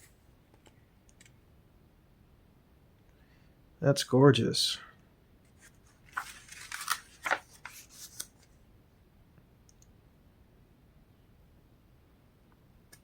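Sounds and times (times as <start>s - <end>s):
book page turning: 5.6s - 8.5s.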